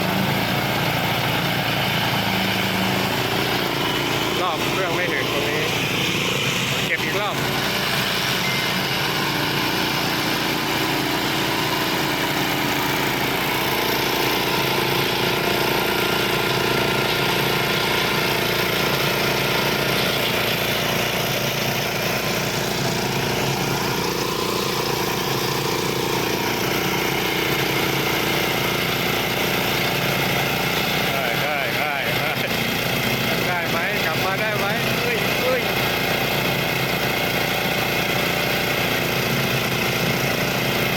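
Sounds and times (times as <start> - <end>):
ride-on lawn mower engine: 0.0 - 40.9.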